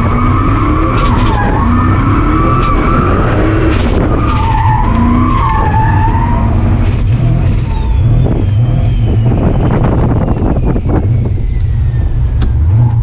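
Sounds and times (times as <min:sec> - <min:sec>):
tyres squealing: 0:00.0 - 0:09.0
pickup engine under load: 0:00.0 - 0:13.0.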